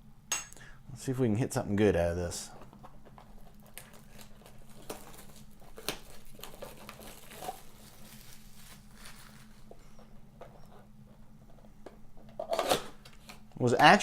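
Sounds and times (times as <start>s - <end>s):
wrapping crinkling and tearing: 2.8s - 9.8s.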